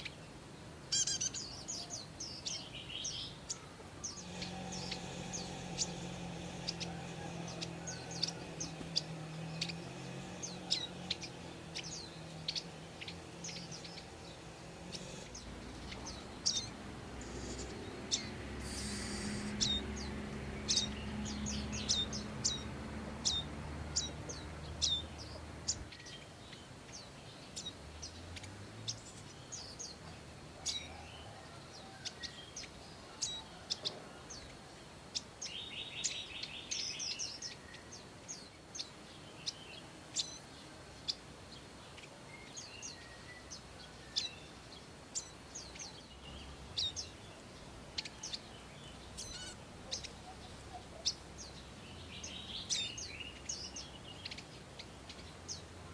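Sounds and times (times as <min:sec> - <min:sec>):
bird chirping: 0:00.0 - 0:55.9.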